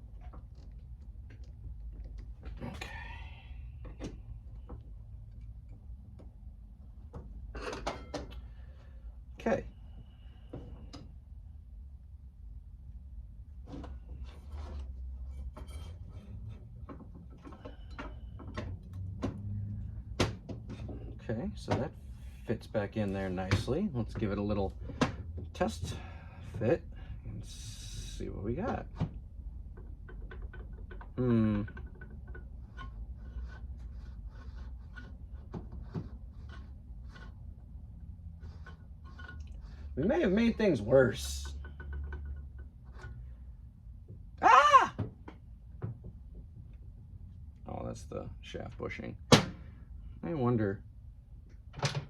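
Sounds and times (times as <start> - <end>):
steady low hum: 0.0 - 44.4.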